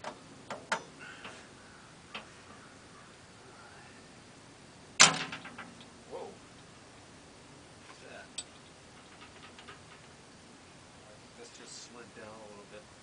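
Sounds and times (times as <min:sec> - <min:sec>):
loud metal clunk ringing: 0:05.0 - 0:05.8.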